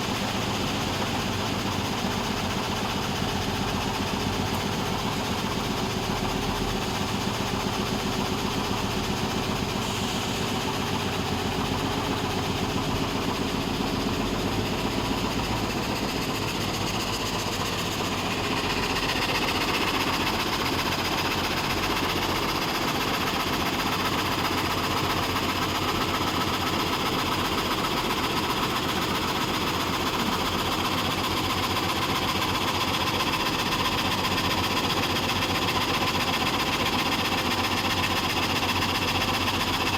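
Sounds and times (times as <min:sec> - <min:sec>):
saw machine clattering: 0:10.8 - 0:39.9.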